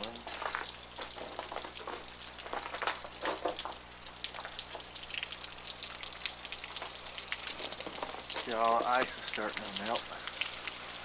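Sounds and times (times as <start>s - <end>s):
water dripping from melting ice: 0.0s - 11.0s.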